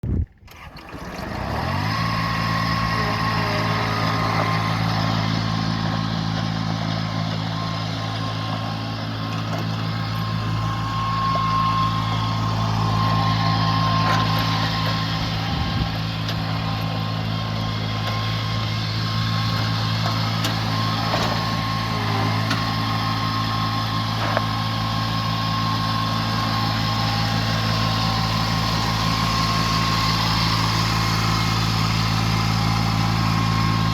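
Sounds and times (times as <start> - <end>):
riding mower diesel engine: 0.1 - 33.9.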